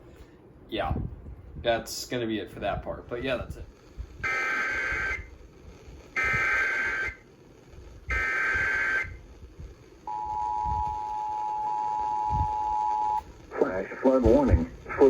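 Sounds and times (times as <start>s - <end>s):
screechy digital data bursts: 4.2s - 5.3s, 6.1s - 7.2s, 8.1s - 9.2s.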